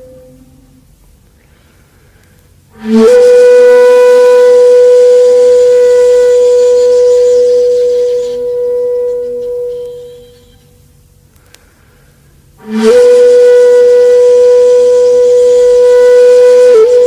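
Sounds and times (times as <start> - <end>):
wind instrument long note: 0.0 - 1.0, 2.7 - 10.9, 12.6 - 17.0.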